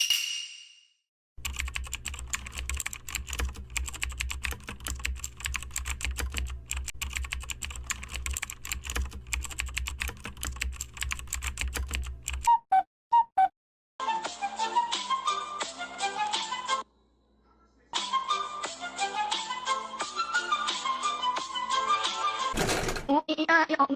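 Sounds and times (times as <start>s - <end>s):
fast keyboard typing: 1.4s - 12.5s.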